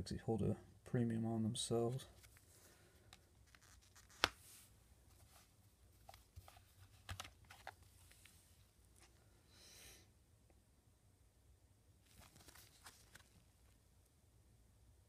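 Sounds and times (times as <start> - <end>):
clicks and taps of handling plastic cards: 6.1 - 8.3.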